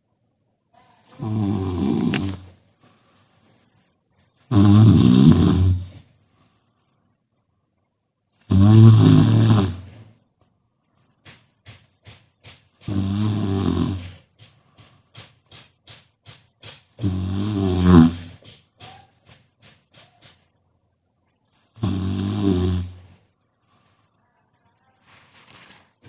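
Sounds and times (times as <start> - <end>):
person snoring loudly: 1.1 - 2.5, 4.5 - 6.0, 8.5 - 10.0, 12.9 - 14.2, 17.0 - 18.4, 21.7 - 23.1.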